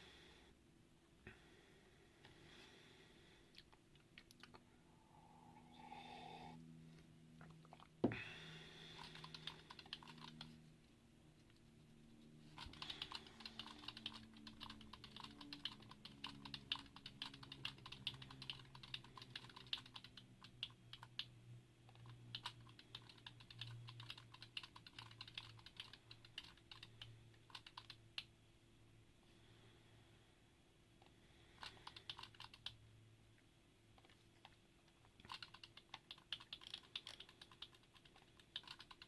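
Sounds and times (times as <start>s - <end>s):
mechanical keyboard typing: 9.0s - 10.6s, 12.5s - 21.3s, 21.9s - 28.3s, 31.6s - 32.8s, 35.2s - 39.0s.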